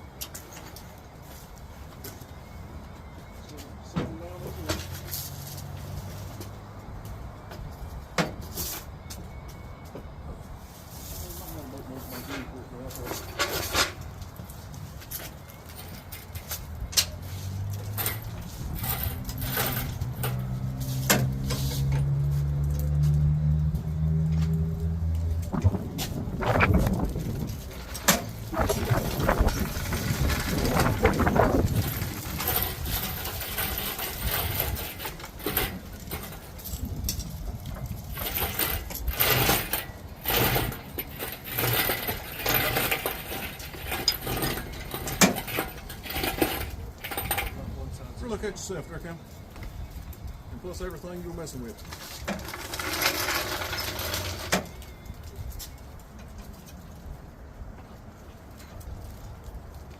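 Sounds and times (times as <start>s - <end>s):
metal tools clinking and rattling: 11.7s - 22.2s, 26.4s - 49.1s, 51.4s - 55.4s
metallic clinks and knocks: 15.1s - 22.2s
wind rumble on microphone: 16.6s - 41.0s.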